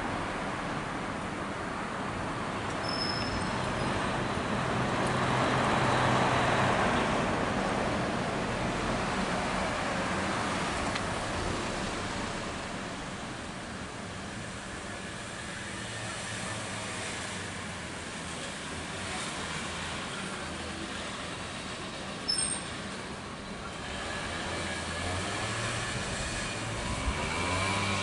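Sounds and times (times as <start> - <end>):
vehicle passing: 25.0 - 28.0.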